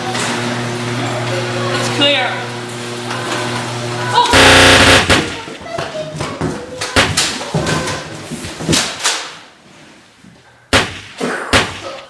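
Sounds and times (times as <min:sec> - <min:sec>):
sharp knocks and bangs: 0:10.7 - 0:12.0.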